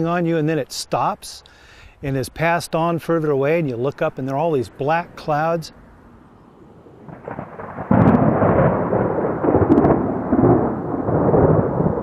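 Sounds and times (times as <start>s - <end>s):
thunder rumbling: 6.6s - 12.0s.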